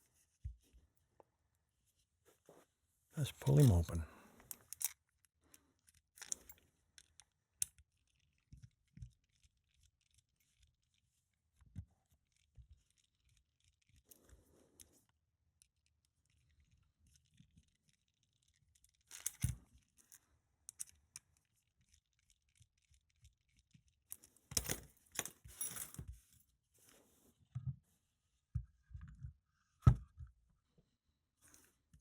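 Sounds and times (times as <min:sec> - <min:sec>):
light clicks and scrapes of lock parts: 0:03.4 - 0:05.1, 0:05.7 - 0:08.2, 0:18.4 - 0:21.3.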